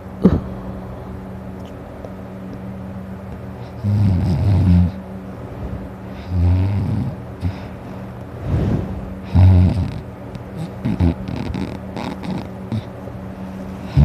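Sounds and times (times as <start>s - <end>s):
low steady hum: 0.0s - 14.0s
man snoring: 3.7s - 5.0s, 6.2s - 7.7s, 9.2s - 12.9s.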